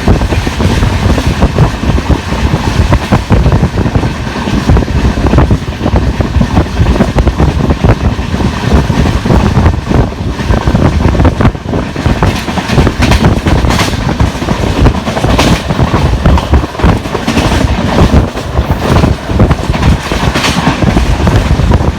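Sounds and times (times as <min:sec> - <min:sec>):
train coaches rushing past: 0:10.5 - 0:21.9
flat wheels pounding: 0:10.8 - 0:21.9.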